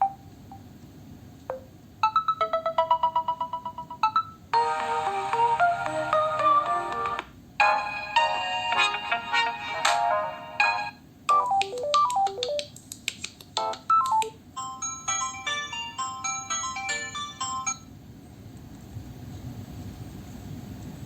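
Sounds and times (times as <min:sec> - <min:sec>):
phone ringtones: 0:01.5 - 0:07.2, 0:14.6 - 0:17.9.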